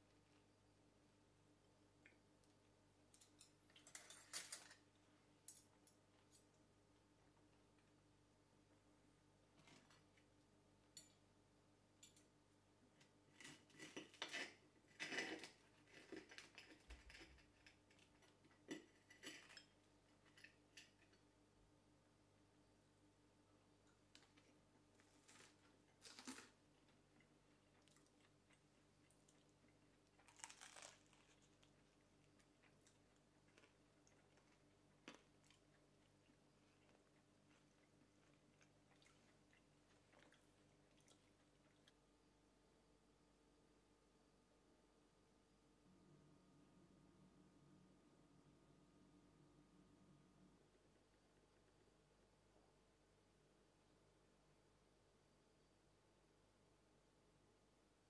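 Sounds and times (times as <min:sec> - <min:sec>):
dishes clinking and scraping: 0:03.2 - 0:04.9, 0:18.6 - 0:21.2.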